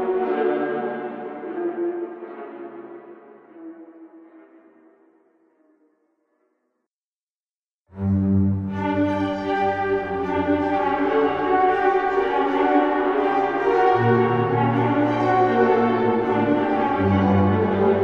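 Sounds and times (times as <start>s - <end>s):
ghostly orchestral chords: 8.0s - 18.0s.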